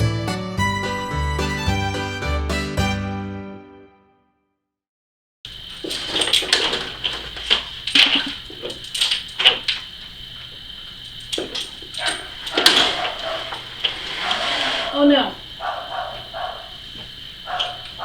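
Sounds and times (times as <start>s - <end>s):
dog barking: 12.0s - 18.0s.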